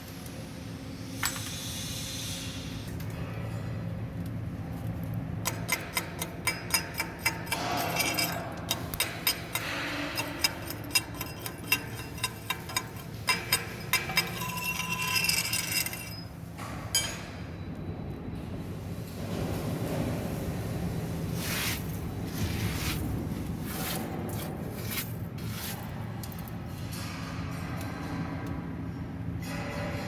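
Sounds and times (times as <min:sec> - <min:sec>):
steady low hum: 0:00.0 - 0:30.0
sharp metallic clinks and taps: 0:05.4 - 0:16.3.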